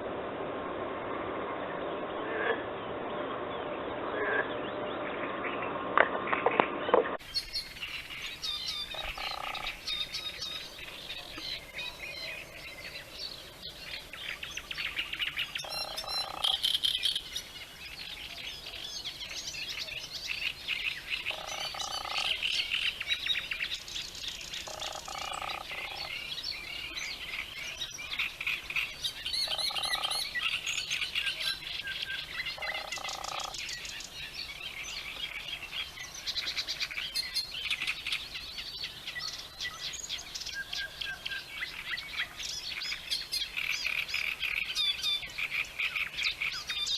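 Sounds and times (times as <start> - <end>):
songbirds chirping and trilling: 0.8 - 46.9
frog croaking: 4.1 - 4.5, 8.9 - 10.0, 15.6 - 17.0, 21.3 - 22.6, 24.6 - 26.2, 28.2 - 30.4, 32.6 - 33.7.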